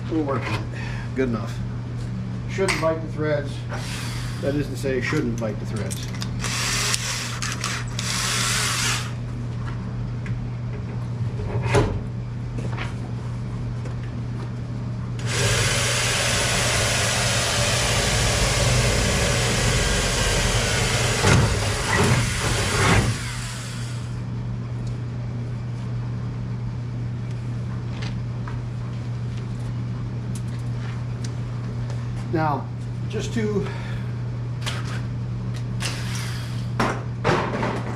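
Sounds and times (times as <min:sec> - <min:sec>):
steady low hum: 0:00.0 - 0:37.9
power drill drilling sheet steel: 0:03.8 - 0:04.4, 0:06.4 - 0:09.2, 0:15.2 - 0:24.1.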